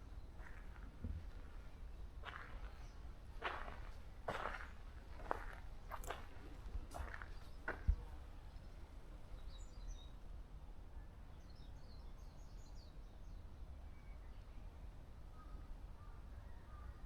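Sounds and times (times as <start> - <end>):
small birds chirping: 0.0 - 10.2.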